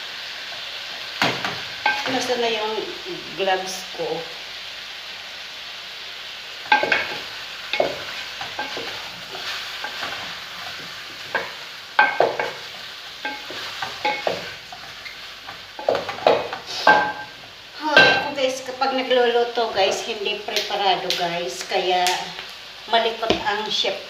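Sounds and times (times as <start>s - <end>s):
chicken sizzling in a pan: 0.0s - 24.0s
utensil scraping a pan: 6.7s - 17.4s.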